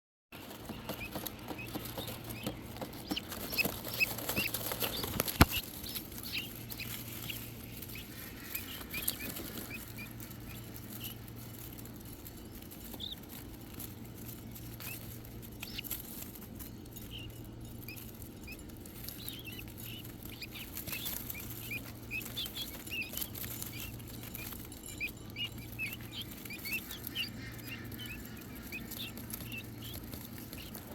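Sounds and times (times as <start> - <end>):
guinea fowl keets peeping: 0.4 - 30.9
steady low hum: 0.4 - 30.9.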